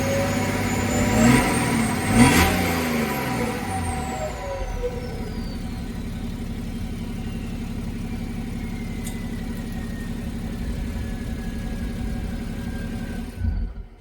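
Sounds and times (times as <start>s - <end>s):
diesel engine idling: 0.0s - 14.0s
turbo whistle: 4.9s - 14.0s.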